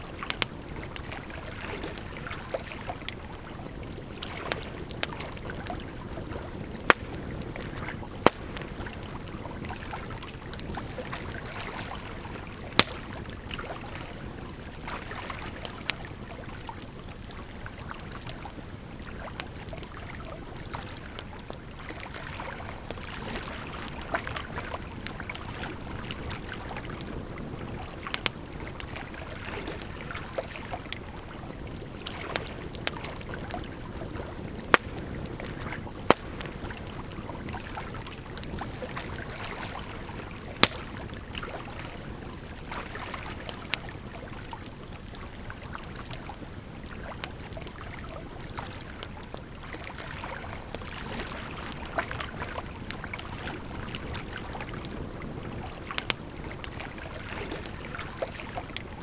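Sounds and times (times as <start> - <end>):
running water rushing: 0.0 - 15.6
wood fire crackling: 0.0 - 22.0, 22.6 - 49.6.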